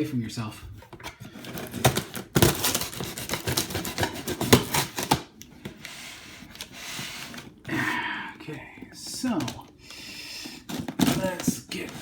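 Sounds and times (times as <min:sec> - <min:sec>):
knife cutting cardboard box tape: 0:01.4 - 0:05.2.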